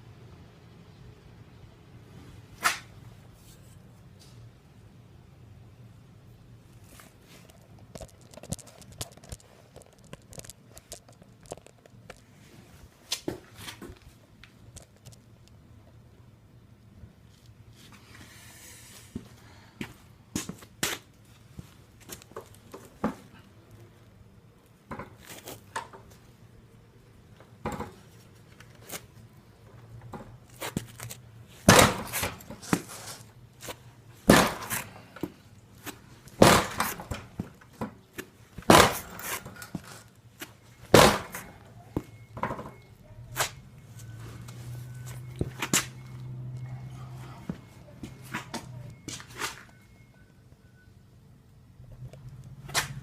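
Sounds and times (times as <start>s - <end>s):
loud sharp impacts: 31.6s - 32.6s, 34.2s - 35.0s, 36.3s - 37.4s, 38.6s - 39.6s, 40.8s - 41.7s.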